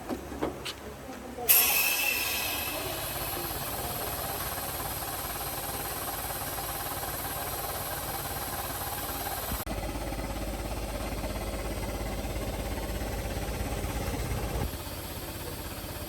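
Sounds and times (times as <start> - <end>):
loud hiss with rattle: 1.5 - 9.6
low engine hum: 2.2 - 16.0.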